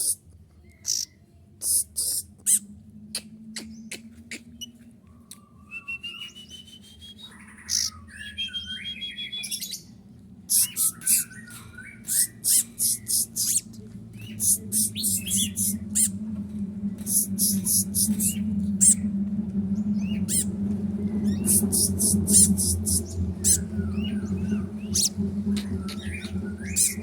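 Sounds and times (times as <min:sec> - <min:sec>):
bird chipping and warbling: 0:00.0 - 0:00.2, 0:00.8 - 0:04.8, 0:07.3 - 0:08.2, 0:10.5 - 0:16.2, 0:17.0 - 0:19.1, 0:20.1 - 0:20.5, 0:21.2 - 0:27.0.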